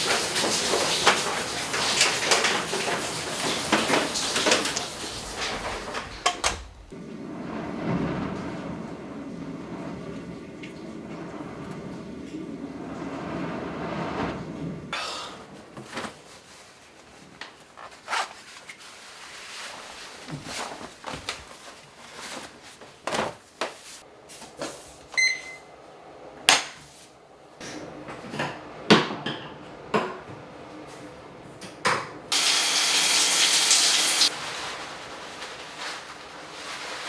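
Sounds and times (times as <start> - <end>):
loud steady hiss: 32.3 - 35.1.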